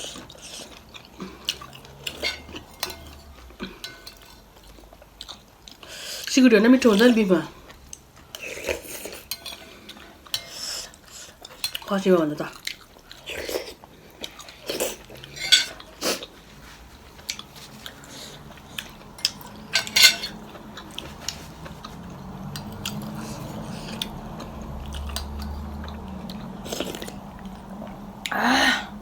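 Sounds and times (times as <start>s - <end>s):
chewing: 0.0s - 6.3s, 6.9s - 28.0s
cutlery clinking on plates: 1.5s - 4.4s, 15.1s - 15.9s, 18.9s - 20.6s.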